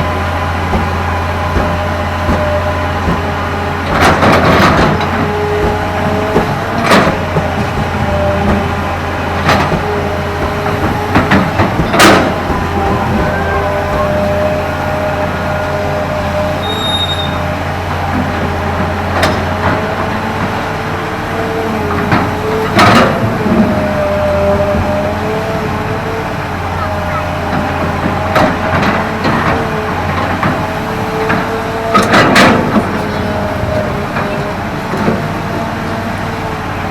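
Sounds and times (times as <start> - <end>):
sharp knocks: 0.0 - 15.0
excavator diesel engine running: 0.0 - 36.9
hydraulic whine: 0.0 - 36.9.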